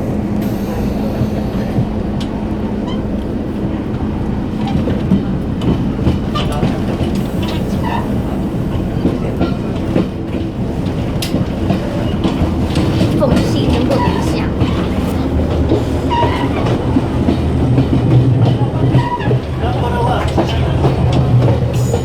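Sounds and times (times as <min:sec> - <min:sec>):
wheels rumbling on rails: 0:00.0 - 0:22.0
diesel engine hum: 0:11.5 - 0:22.0.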